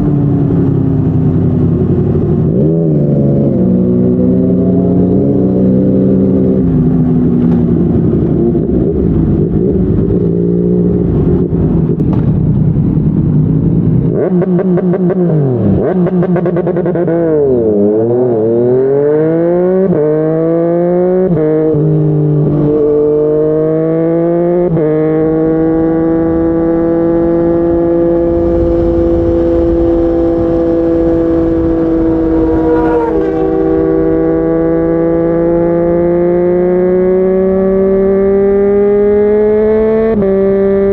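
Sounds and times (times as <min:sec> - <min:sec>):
motorcycle engine revving and upshifting: 0:00.0 - 0:40.9
wind rushing over microphone: 0:25.2 - 0:40.9.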